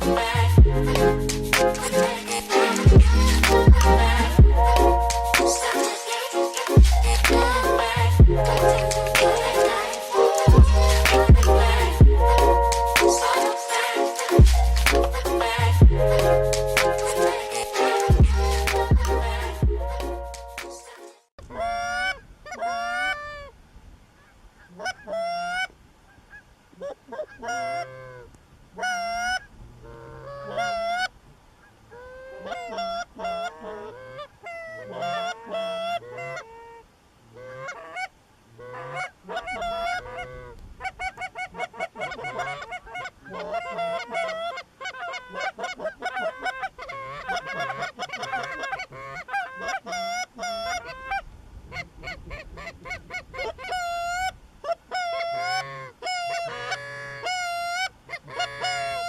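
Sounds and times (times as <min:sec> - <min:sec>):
goose honking: 0:00.0 - 0:20.8, 0:32.0 - 0:36.7, 0:37.4 - 0:54.3, 0:54.9 - 0:59.0.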